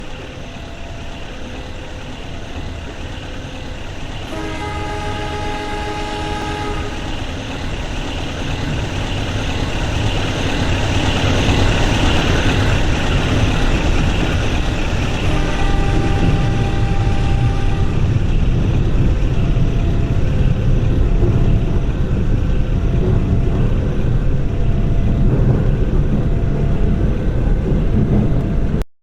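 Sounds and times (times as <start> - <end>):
locomotive engine rumbling: 0.0 - 28.8
locomotive horn: 4.2 - 7.4, 15.2 - 18.5.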